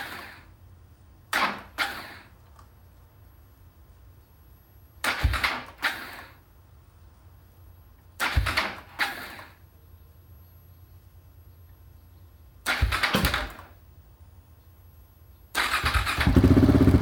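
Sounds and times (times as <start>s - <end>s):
motorcycle engine cranking: 12.7s - 13.7s, 15.6s - 17.0s.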